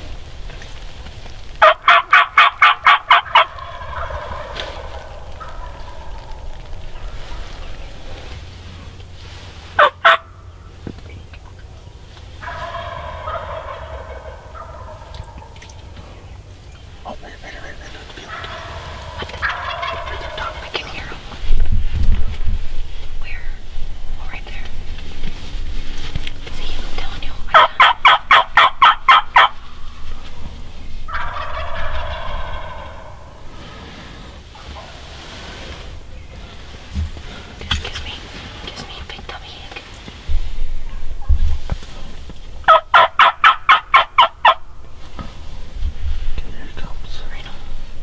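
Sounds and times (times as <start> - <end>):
turkey yelping: 1.6 - 7.4, 9.8 - 10.4, 12.4 - 15.6, 18.2 - 20.9, 27.5 - 29.6, 31.1 - 33.3, 42.6 - 44.7
turkey gobbling: 1.6 - 7.8, 9.8 - 10.6, 11.8 - 16.4, 17.0 - 21.4, 27.5 - 30.3, 31.1 - 33.4, 42.6 - 44.7.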